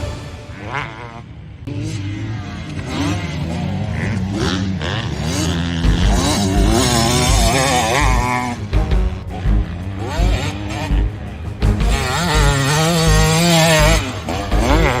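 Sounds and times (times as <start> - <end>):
motocross bike engine revving: 0.0 - 15.0
low thuds: 5.8 - 15.0.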